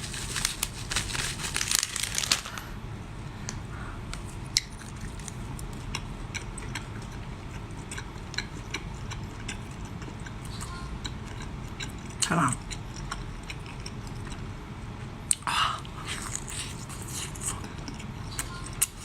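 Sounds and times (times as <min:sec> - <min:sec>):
crinkling and rustling: 0:00.0 - 0:02.8
soft squishy chewing: 0:04.2 - 0:19.0.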